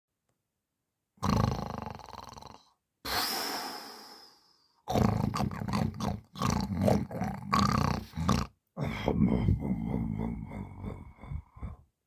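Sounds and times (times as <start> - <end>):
man snoring: 1.2 - 11.8
hissing breath with whistle: 3.1 - 4.8.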